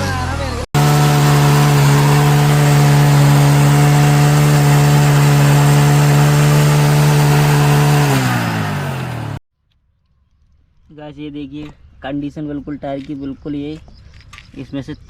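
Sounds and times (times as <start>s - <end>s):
motorcycle engine at high revs: 0.0s - 9.4s
spinning tyre rushing: 0.0s - 9.4s.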